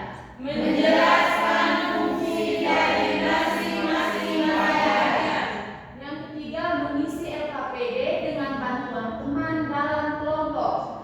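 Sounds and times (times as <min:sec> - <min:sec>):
children reciting in unison: 0:00.0 - 0:05.8.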